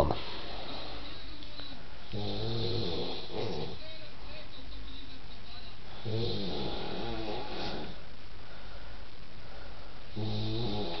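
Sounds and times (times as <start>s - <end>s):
man snoring: 2.1s - 3.8s, 6.0s - 8.0s, 10.1s - 11.0s.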